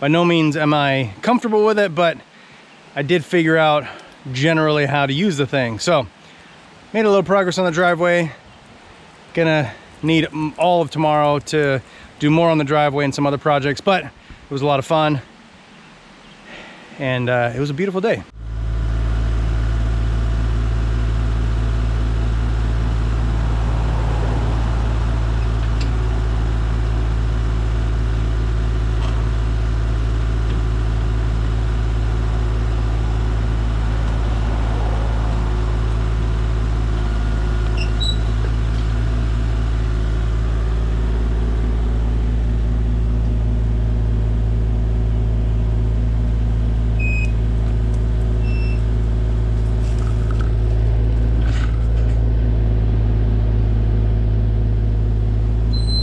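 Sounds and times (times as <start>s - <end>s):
engine idling: 18.3s - 56.0s.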